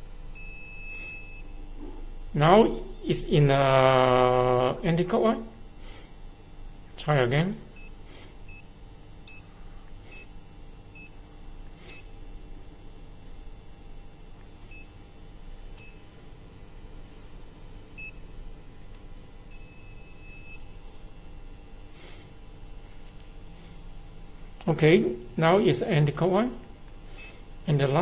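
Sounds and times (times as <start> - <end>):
multimeter buzzer beeps: 0.3 - 1.8, 2.4 - 12.3, 13.7 - 17.0, 17.9 - 18.7, 19.4 - 22.4, 25.1 - 28.0.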